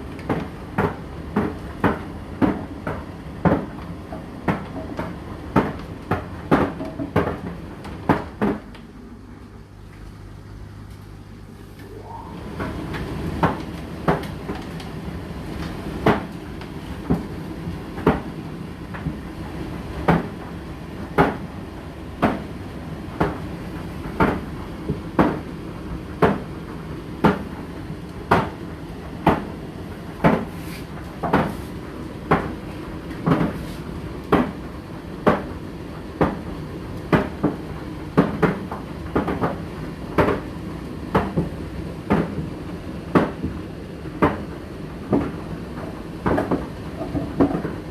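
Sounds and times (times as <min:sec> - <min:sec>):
knocking in rotating drum: 0:00.2 - 0:08.8, 0:27.2 - 0:27.7, 0:35.2 - 0:40.5, 0:43.1 - 0:47.9.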